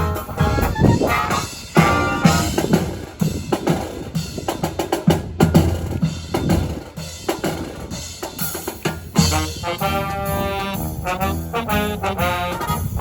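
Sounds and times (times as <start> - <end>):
snare and bass drum playing: 0.0 - 13.0
brass sustained chords: 9.2 - 13.0.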